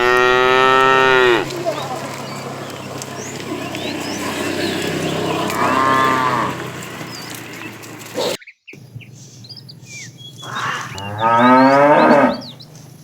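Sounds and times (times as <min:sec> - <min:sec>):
cows mooing: 0:00.0 - 0:08.4, 0:09.6 - 0:13.0
birds chirping: 0:00.0 - 0:13.0.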